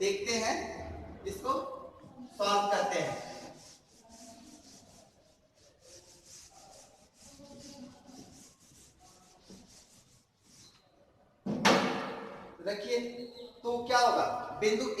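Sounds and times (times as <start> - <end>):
handwriting scratching: 2.3 - 10.9.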